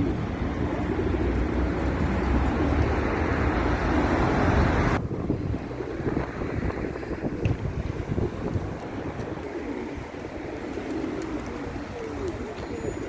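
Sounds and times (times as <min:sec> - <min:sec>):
road traffic noise: 0:00.0 - 0:13.0
wind buffeting microphone: 0:03.8 - 0:12.5.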